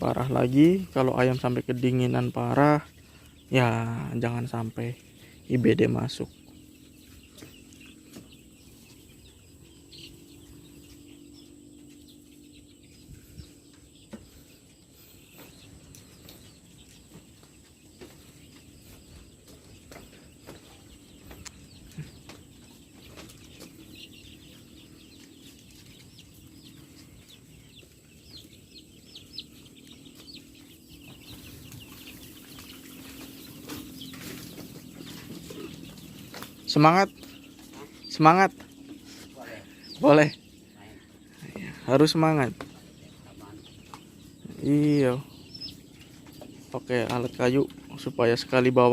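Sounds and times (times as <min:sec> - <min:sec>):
chicks peeping: 0:00.0 - 0:48.9.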